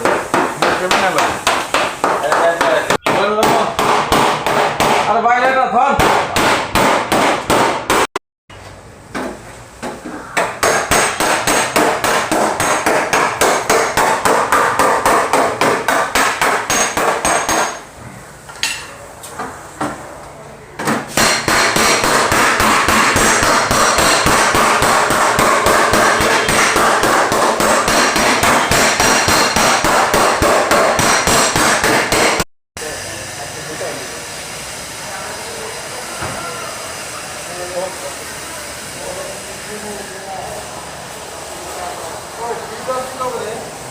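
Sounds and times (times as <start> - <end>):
hammer blows on sheet metal: 0.0 - 8.1, 10.4 - 17.9, 21.0 - 32.4.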